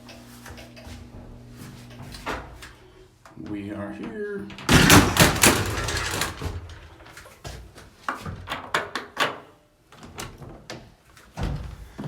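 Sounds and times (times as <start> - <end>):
elevator door sliding open: 4.5 - 7.2
sharp clicks and knocks: 4.6 - 7.3.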